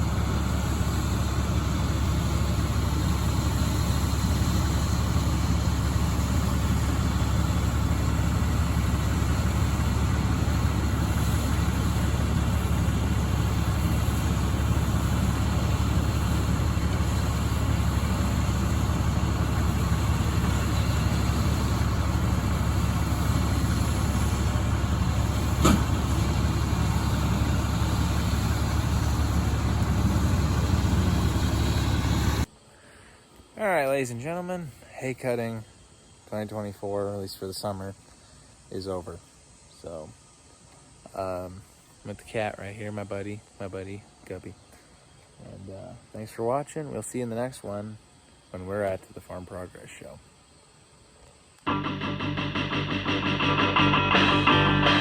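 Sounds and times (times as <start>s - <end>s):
vehicle engine rumble from cab: 0.0s - 32.5s.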